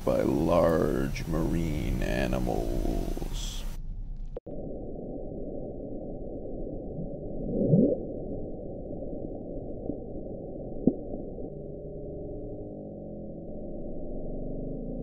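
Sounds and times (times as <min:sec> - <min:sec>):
muffled underwater noise: 0:00.0 - 0:03.7
rising pitch sweep: 0:06.9 - 0:08.2.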